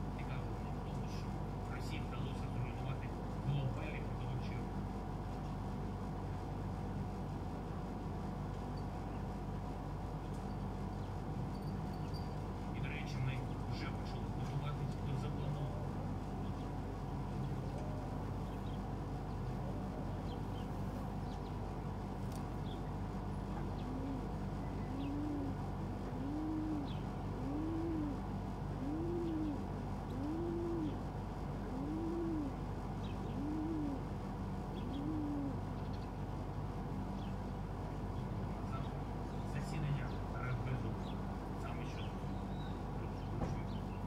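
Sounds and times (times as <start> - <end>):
steady background hum: 0.0 - 44.0
pigeon cooing: 23.4 - 35.7.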